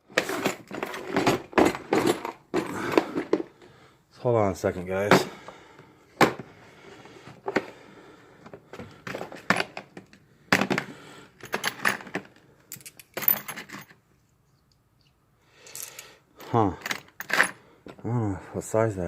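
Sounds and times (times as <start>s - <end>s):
metal tools clinking: 11.4s - 14.0s, 15.6s - 17.6s.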